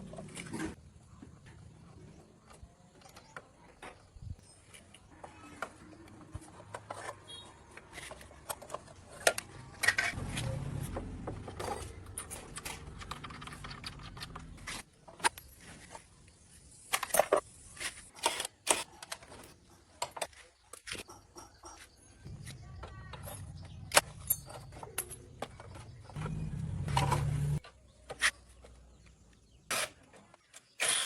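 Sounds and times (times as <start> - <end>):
metal parts and tools clinking: 2.9 - 27.6.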